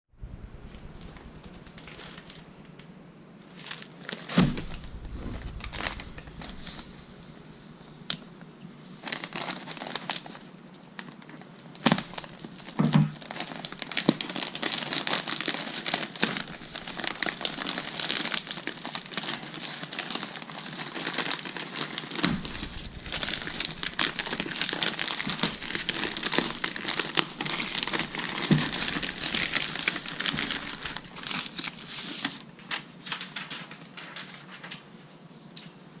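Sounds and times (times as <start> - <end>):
packaging crinkling and rustling: 1.0 - 35.1
knocks: 22.2 - 24.3.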